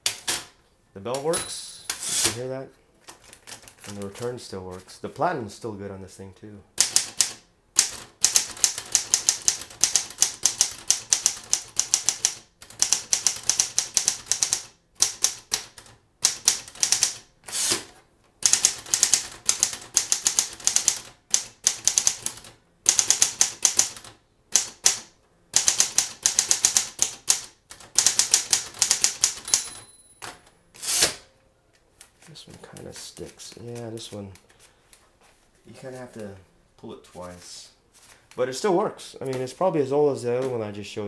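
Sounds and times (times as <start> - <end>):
typewriter key strikes: 25.6 - 30.4.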